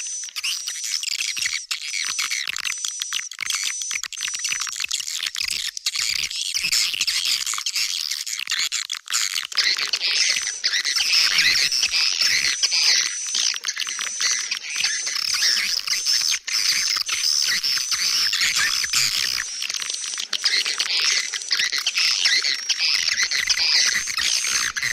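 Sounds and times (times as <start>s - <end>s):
swiftlets twittering and chirping: 5.4s - 24.9s.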